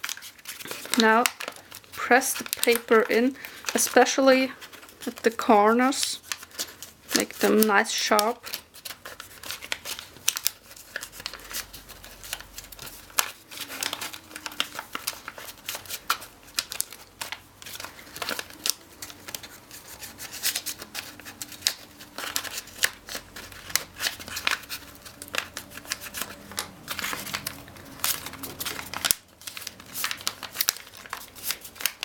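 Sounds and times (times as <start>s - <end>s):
paper crinkling and crackling: 0.0s - 32.0s.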